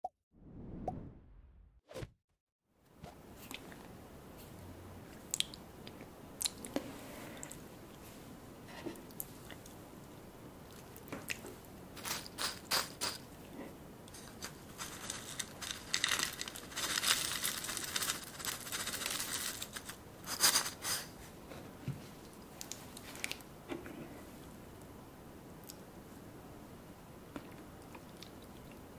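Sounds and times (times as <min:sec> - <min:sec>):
crackling and crinkling: 0:14.0 - 0:23.9
food crunching: 0:14.1 - 0:20.0.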